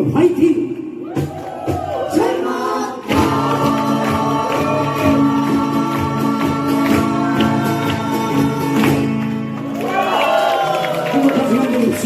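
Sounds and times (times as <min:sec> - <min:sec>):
voices singing together: 0:01.5 - 0:09.4
acoustic guitars: 0:02.6 - 0:12.0.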